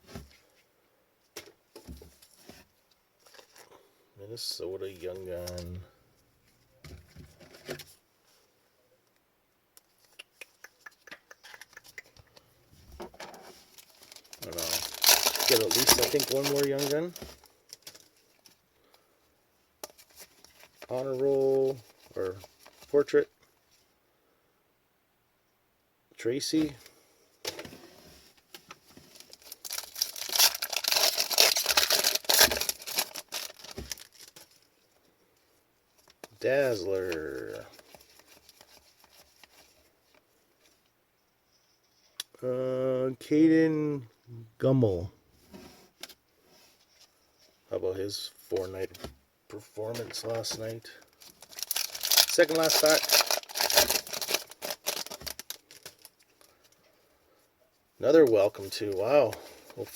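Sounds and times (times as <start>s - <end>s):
trading cards rustling and clicking: 9.9s - 18.6s, 28.5s - 34.6s, 49.8s - 56.8s.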